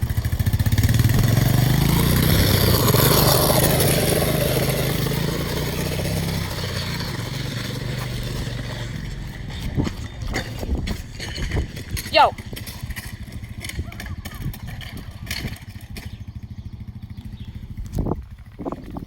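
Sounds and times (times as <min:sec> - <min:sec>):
engine humming low: 0:00.0 - 0:19.0.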